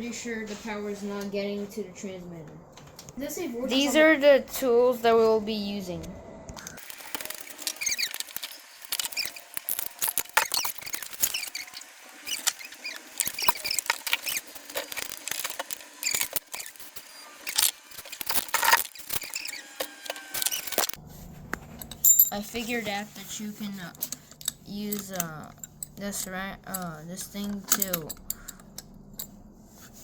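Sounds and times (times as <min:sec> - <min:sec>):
short high squeaks: 0:06.8 - 0:20.9
tools and bike parts clinking: 0:06.8 - 0:21.0, 0:21.7 - 0:22.5, 0:23.9 - 0:29.4.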